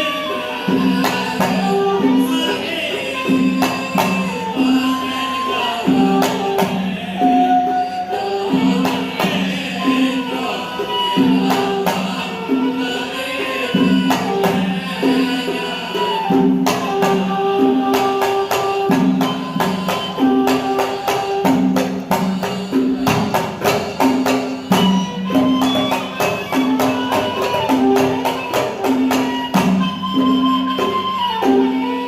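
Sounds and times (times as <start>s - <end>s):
hand percussion strokes: 0.0s - 32.0s.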